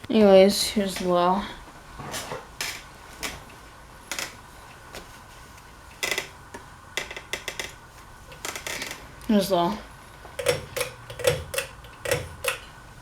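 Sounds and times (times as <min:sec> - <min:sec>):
ceiling fan humming: 0:00.0 - 0:13.0
sharp clicks and taps: 0:10.3 - 0:12.7.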